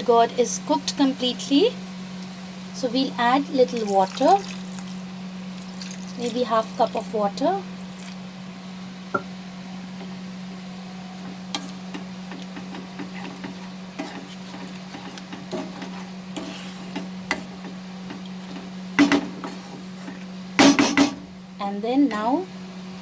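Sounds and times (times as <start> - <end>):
steady low hum: 0.0 - 23.0
spatula scraping in a pan: 12.6 - 17.8, 19.2 - 20.3.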